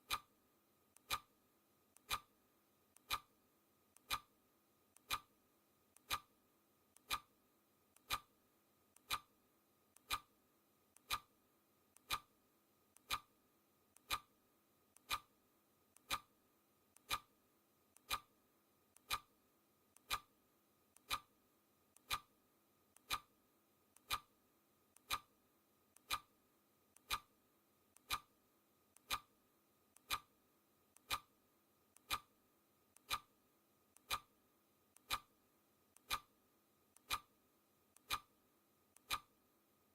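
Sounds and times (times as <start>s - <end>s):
clock ticking: 0.0s - 0.3s, 1.0s - 1.3s, 2.0s - 2.3s, 2.9s - 3.3s, 3.9s - 4.3s, 4.9s - 5.3s, 5.9s - 6.3s, 6.9s - 7.3s, 7.9s - 8.3s, 8.9s - 9.3s, 9.9s - 10.3s, 10.9s - 11.3s, 11.9s - 12.3s, 12.9s - 13.3s, 13.9s - 14.3s, 14.9s - 15.3s, 15.9s - 16.3s, 16.9s - 17.3s, 17.9s - 18.3s, 18.9s - 19.3s, 20.0s - 20.3s, 20.9s - 21.3s, 21.9s - 22.3s, 23.0s - 23.3s, 24.0s - 24.3s, 25.0s - 25.3s, 26.0s - 26.3s, 27.0s - 27.3s, 28.0s - 28.4s, 29.0s - 29.3s, 30.0s - 30.3s, 31.0s - 31.3s, 32.0s - 32.3s, 32.9s - 33.3s, 34.0s - 34.3s, 35.0s - 35.3s, 36.0s - 36.3s, 37.0s - 37.3s, 38.0s - 38.3s, 39.0s - 39.4s.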